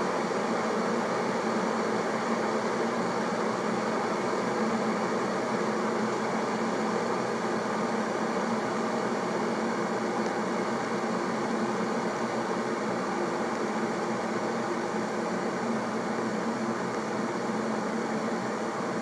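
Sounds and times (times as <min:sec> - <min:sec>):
electric kettle heating water: 0:00.0 - 0:19.0.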